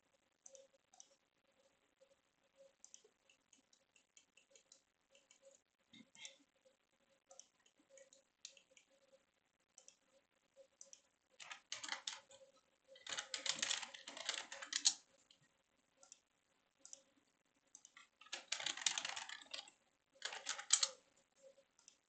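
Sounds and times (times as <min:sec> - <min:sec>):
typing on a computer keyboard: 0:10.8 - 0:15.1, 0:17.8 - 0:21.0.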